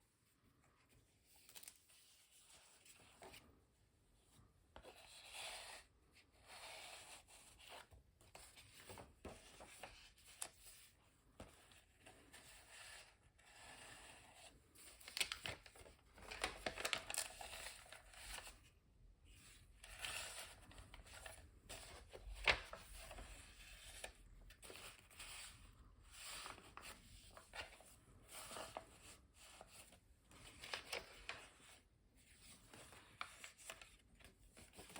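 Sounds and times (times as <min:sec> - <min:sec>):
paper pages rustling: 0:00.8 - 0:03.6, 0:06.5 - 0:12.6, 0:14.8 - 0:18.6, 0:19.8 - 0:34.9.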